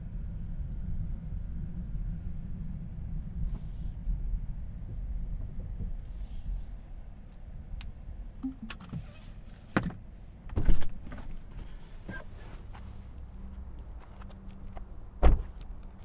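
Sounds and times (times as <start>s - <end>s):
low car rumble: 0.0s - 16.0s
car door thumps: 9.8s - 11.3s, 15.2s - 15.6s.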